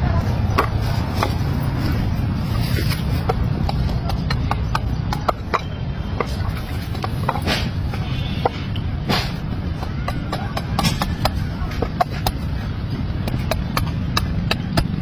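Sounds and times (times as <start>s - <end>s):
steady low rumble: 0.0s - 15.0s
hammer tapping on wooden planks: 13.2s - 15.0s.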